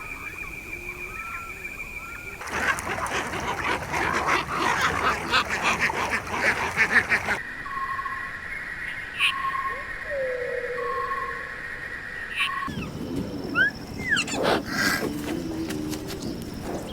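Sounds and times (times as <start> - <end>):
ducks or geese quacking and honking: 2.4 - 7.4.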